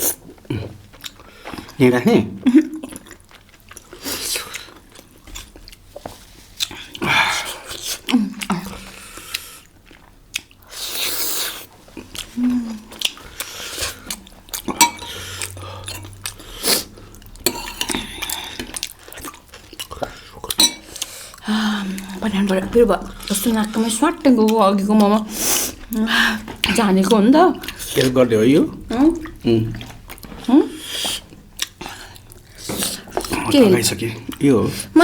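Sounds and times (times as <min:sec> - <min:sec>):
chewing dumplings: 0:00.0 - 0:01.8, 0:02.4 - 0:35.0
cutlery clinking on plates: 0:14.7 - 0:15.2, 0:20.5 - 0:21.0.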